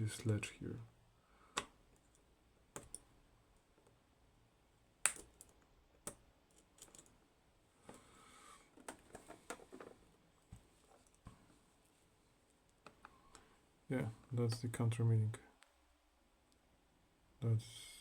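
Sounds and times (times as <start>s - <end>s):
small metal parts clicking: 5.0s - 7.2s.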